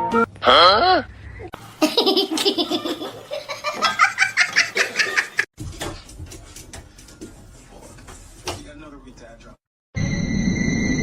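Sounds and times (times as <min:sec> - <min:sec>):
person laughing: 0:01.8 - 0:05.5.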